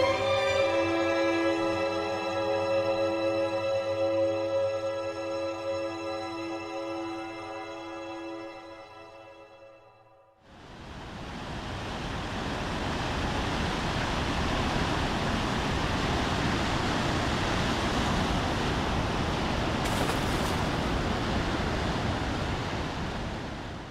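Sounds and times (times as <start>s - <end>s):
ocean waves washing: 10.5s - 23.9s.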